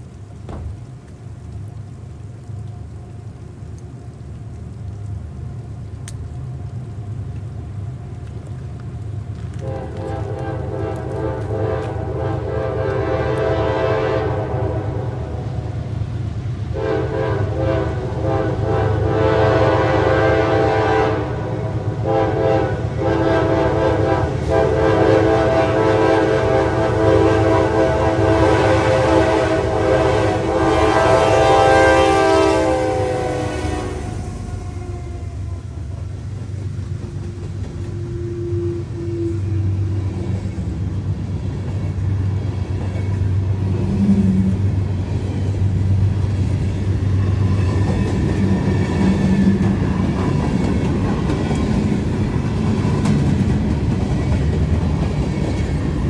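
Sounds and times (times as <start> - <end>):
train rumbling: 0.0 - 56.0
locomotive air horn blasts: 9.6 - 15.7, 16.7 - 35.6.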